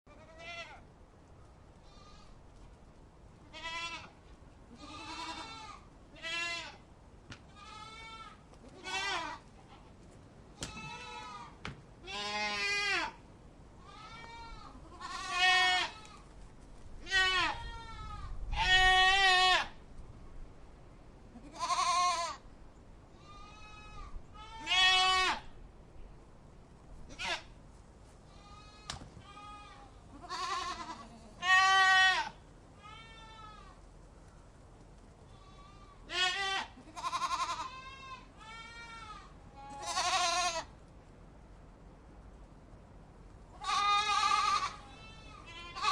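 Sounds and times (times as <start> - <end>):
goats bleating: 3.5 - 6.8, 7.5 - 9.8, 10.6 - 13.2, 13.8 - 16.2, 21.4 - 22.4, 23.3 - 25.5, 27.1 - 27.5, 28.3 - 33.8, 35.3 - 40.7, 43.6 - 45.9.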